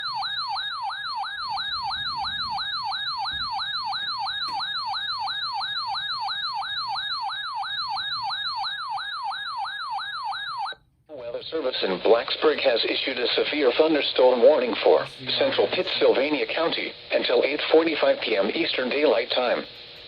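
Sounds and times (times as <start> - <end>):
rapidly sweeping alert siren: 0.0 - 10.8.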